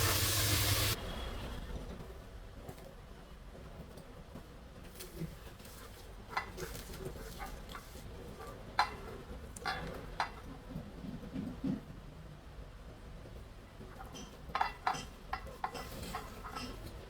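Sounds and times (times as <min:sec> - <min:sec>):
soft scraping and handling: 0:04.8 - 0:10.1
utensils clinking against dishes: 0:14.0 - 0:17.0.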